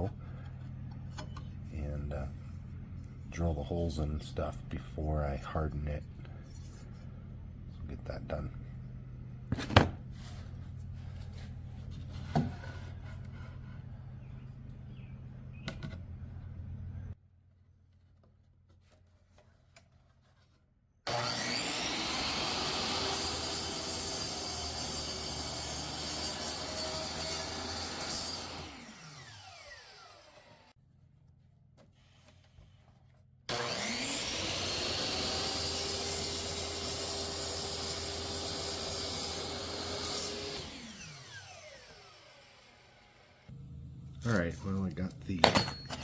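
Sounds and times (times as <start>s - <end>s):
power saw cutting wood: 21.1s - 30.8s, 33.5s - 43.5s.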